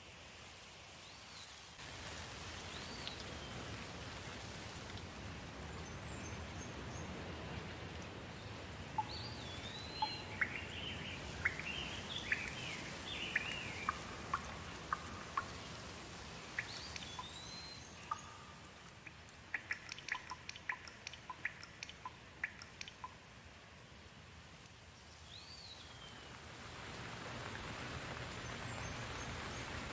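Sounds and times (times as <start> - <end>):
steady rain hiss: 0.0 - 29.9
bird chirping: 8.4 - 15.7, 16.3 - 23.2
water drips tapping: 16.6 - 17.4, 18.1 - 23.2.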